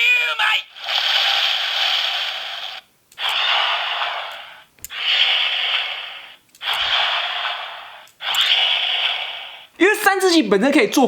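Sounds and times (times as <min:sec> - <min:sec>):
toy sword whooshes: 0:03.2 - 0:09.6.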